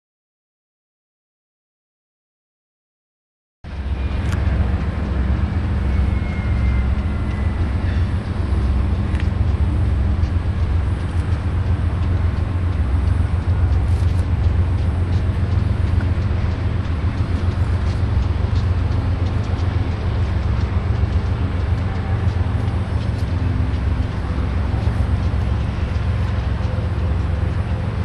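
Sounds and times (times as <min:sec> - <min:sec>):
freight train rumbling: 0:03.6 - 0:28.0
thin squeal: 0:05.8 - 0:08.2.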